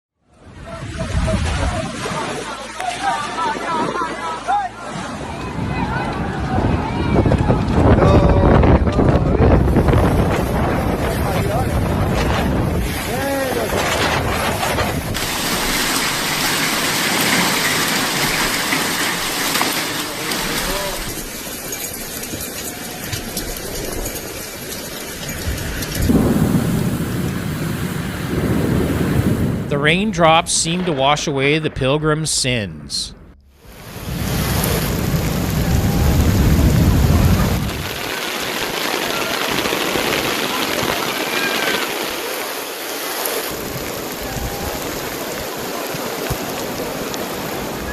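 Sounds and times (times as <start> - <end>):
heavy rain: 0.4 - 31.6, 33.5 - 47.9
running water: 0.8 - 6.3, 12.5 - 26.5, 33.6 - 47.9
deep rumble: 26.0 - 29.9, 33.1 - 38.1.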